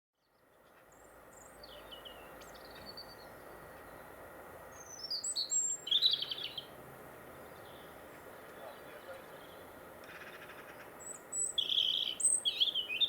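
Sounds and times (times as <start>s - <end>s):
songbird singing: 0.2s - 4.1s, 4.7s - 13.0s.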